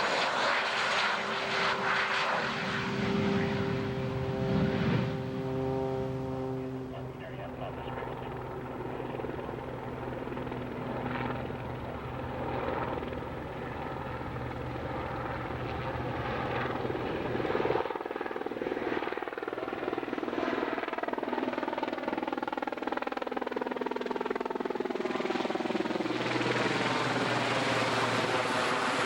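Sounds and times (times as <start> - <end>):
aircraft engine running: 0.0 - 29.0
low hum: 0.6 - 16.7.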